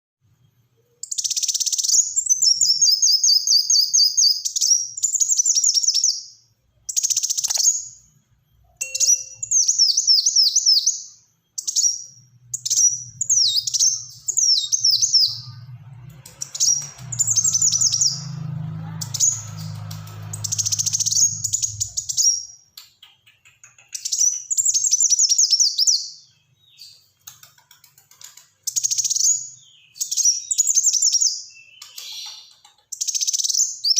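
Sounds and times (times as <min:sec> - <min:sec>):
sunbird singing: 0:00.8 - 0:27.1, 0:28.7 - 0:33.9
low hum: 0:12.1 - 0:22.4.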